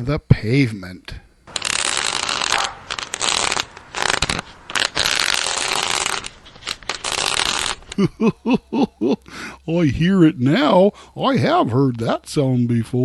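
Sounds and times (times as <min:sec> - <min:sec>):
metal nozzle scraping concrete: 0:01.5 - 0:07.8.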